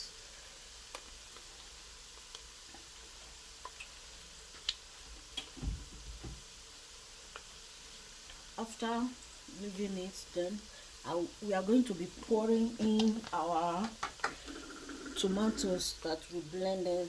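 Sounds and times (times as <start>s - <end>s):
soft dull thump: 5.6s - 6.5s.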